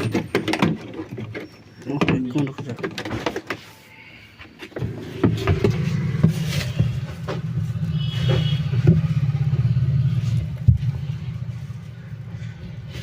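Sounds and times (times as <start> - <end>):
knocks and clicks: 8.2 - 9.3.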